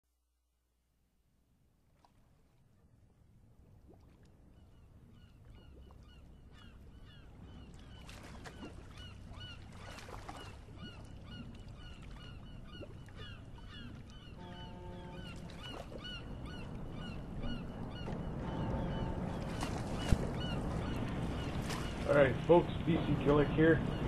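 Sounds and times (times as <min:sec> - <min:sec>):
crowd of birds calling: 0:13.2 - 0:24.0.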